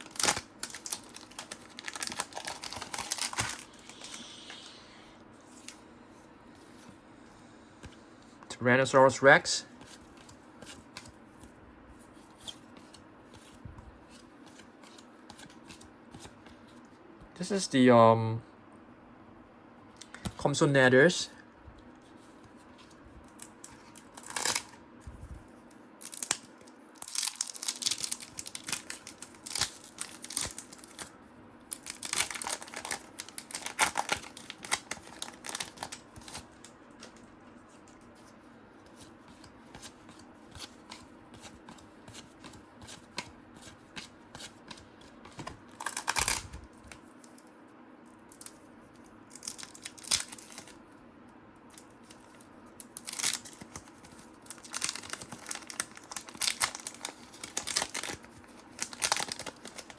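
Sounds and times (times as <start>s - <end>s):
card crinkling: 0.0s - 4.3s, 31.7s - 47.4s, 52.0s - 59.9s
cards rustling and sliding: 0.2s - 7.0s, 9.8s - 16.7s, 33.6s - 46.5s.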